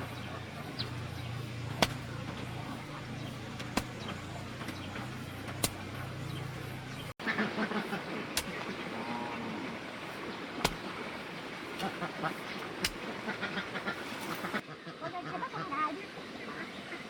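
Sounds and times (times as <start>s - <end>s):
low motor hum: 0.0s - 7.2s.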